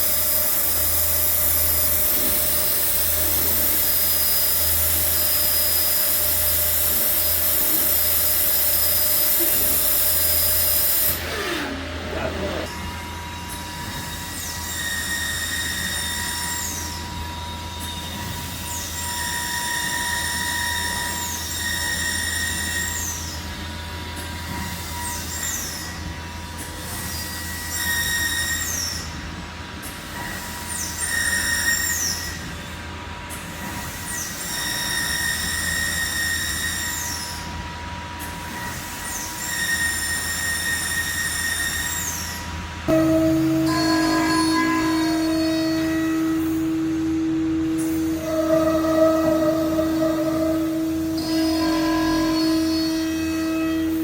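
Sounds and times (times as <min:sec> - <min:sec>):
machine motors whining: 0:00.0 - 0:20.3, 0:42.9 - 0:54.0
steady hum: 0:42.9 - 0:54.0.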